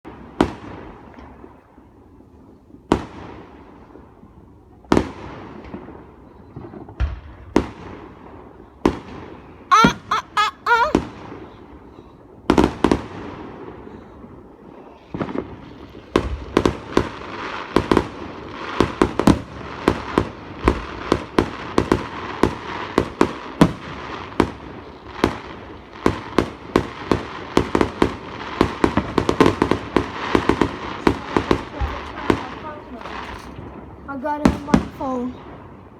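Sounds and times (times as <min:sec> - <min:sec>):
fireworks bangs: 0:06.6 - 0:11.4, 0:15.1 - 0:35.6
fireworks crackling: 0:15.1 - 0:35.7.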